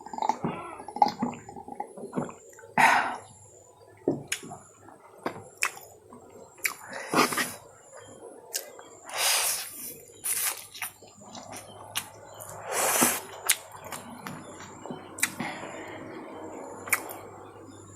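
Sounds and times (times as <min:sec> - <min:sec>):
noisy slurps: 0:00.0 - 0:03.3, 0:05.6 - 0:14.6
wet chewing: 0:04.2 - 0:15.6.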